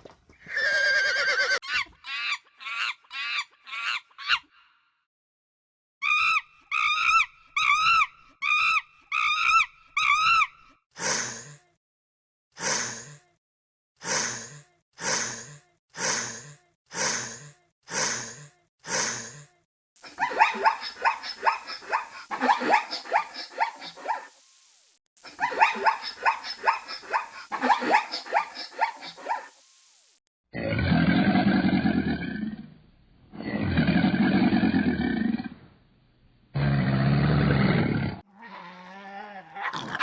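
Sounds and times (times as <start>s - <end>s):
horse whinnying: 0.4s - 1.8s
harsh animal calls: 6.0s - 10.6s
pitched animal calls: 6.0s - 10.6s.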